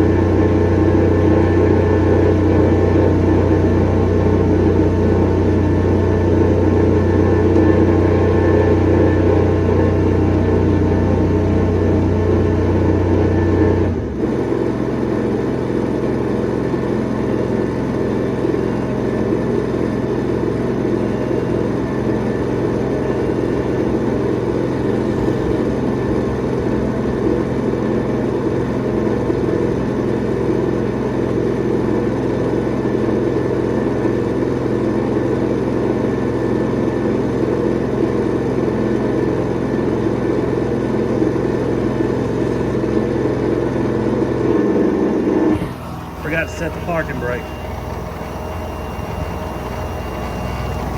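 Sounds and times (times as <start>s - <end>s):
compressor engine running: 0.0s - 50.9s
deep low hum: 45.5s - 50.9s.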